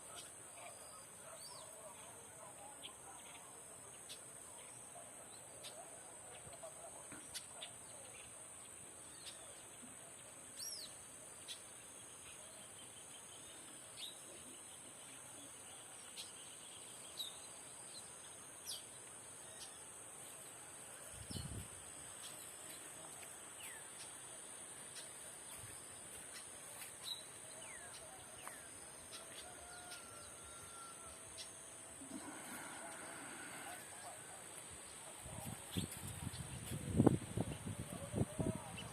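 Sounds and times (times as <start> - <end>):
birds chirping: 21.2 - 38.9.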